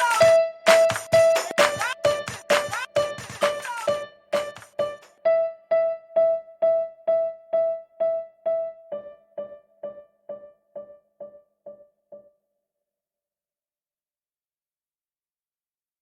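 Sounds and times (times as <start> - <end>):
drums: 0.0 - 5.1
repeating keyboard note: 0.0 - 11.4.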